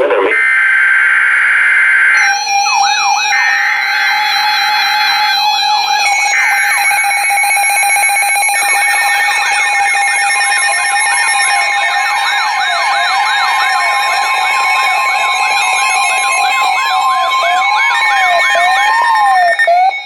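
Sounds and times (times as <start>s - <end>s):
steady alert tones: 0.0s - 0.4s
electronic alarm sirens yelping: 0.0s - 20.0s.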